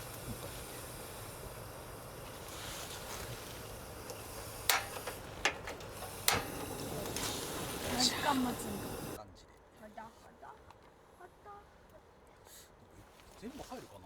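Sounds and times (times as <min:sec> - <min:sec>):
cookware clinking: 0:00.0 - 0:09.2
outdoor background rush: 0:00.0 - 0:09.2.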